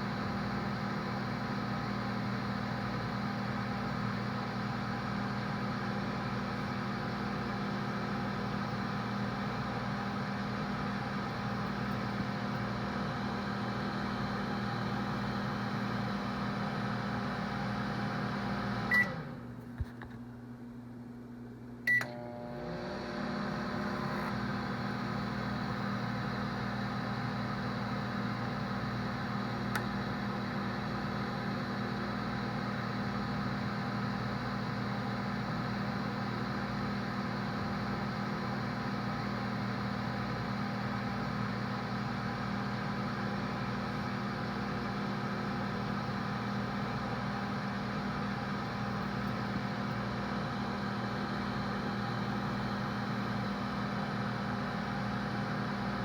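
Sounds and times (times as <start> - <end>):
microwave hum and whir: 0.0 - 56.0
microwave beep: 17.7 - 19.4, 21.9 - 22.7.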